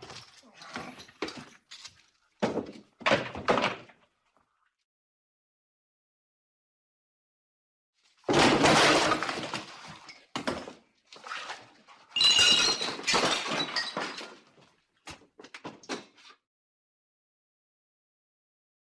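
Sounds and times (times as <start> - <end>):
crashing and clattering impacts: 8.3 - 9.7.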